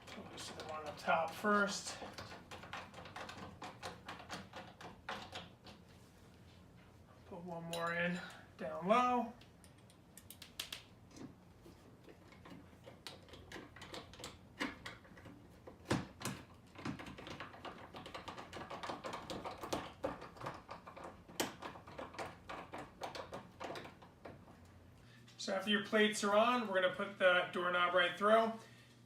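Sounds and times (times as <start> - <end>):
screwdriver driving a screw: 2.0 - 5.8, 12.2 - 24.0.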